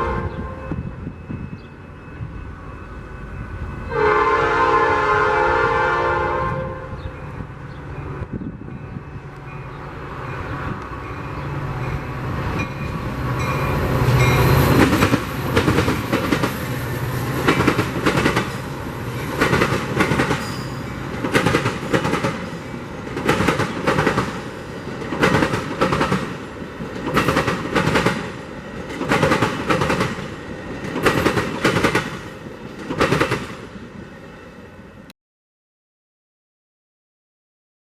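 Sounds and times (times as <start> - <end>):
train horn: 0.0 - 1.0, 3.7 - 7.3
train wheels clacking over rails: 11.0 - 33.7.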